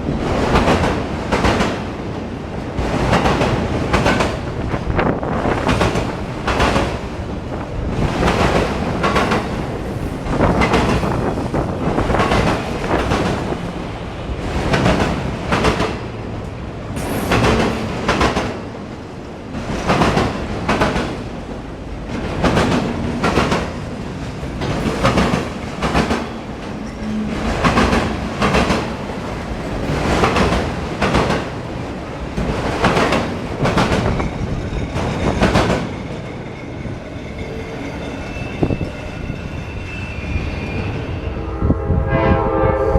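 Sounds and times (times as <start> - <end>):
continuous train rumble: 0.0 - 42.9
train wheels clacking over joints: 22.1 - 31.6, 32.3 - 38.2.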